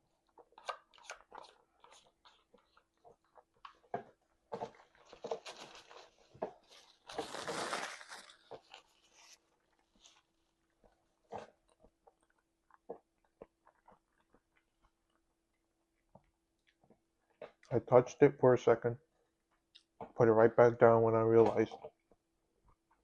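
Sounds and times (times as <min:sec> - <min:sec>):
chewing and crunching: 0:00.2 - 0:17.7.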